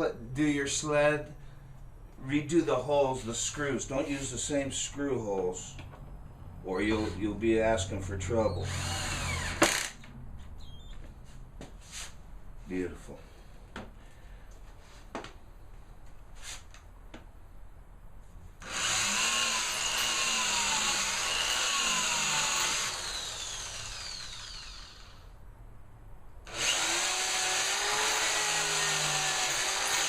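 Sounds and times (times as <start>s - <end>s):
power drill drilling into wood: 8.7s - 10.0s, 18.6s - 25.3s, 26.5s - 30.0s.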